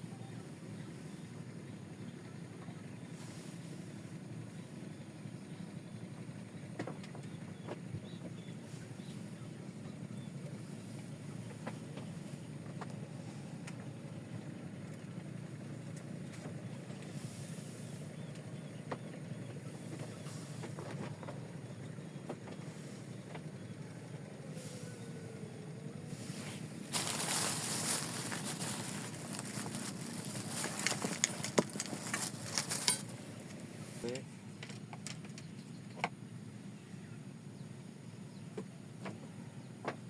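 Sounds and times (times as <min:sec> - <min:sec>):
boat engine droning: 0:00.0 - 0:40.0
rustling: 0:26.2 - 0:33.6.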